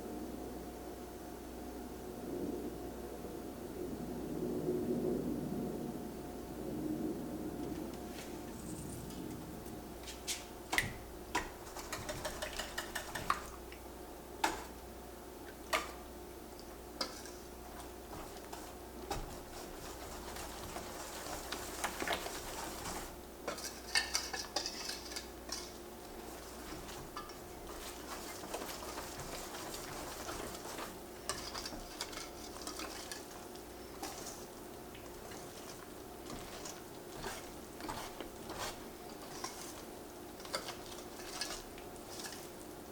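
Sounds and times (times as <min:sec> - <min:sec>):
utensils clinking against dishes: 0:19.9 - 0:34.4, 0:40.4 - 0:42.6.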